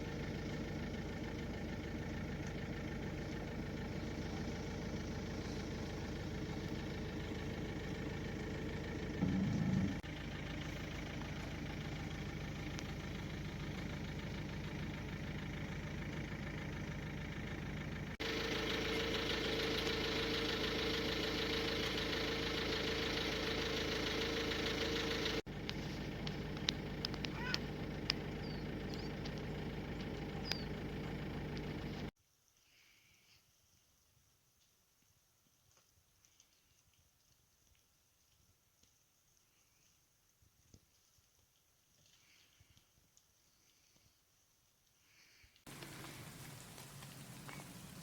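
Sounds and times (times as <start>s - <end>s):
engine humming: 0.0s - 32.1s, 45.7s - 48.0s.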